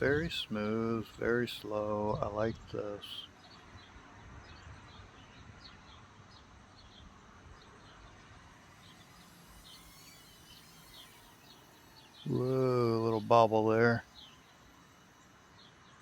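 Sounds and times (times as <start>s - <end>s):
low wind rumble: 0.0s - 3.2s
small birds chirping: 0.0s - 16.0s.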